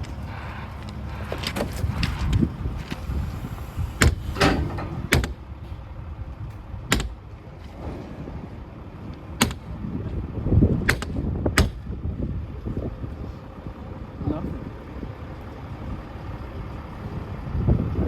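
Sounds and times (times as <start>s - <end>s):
glass-breaker striking car window: 6.9s - 7.2s, 9.4s - 9.7s, 10.9s - 11.8s.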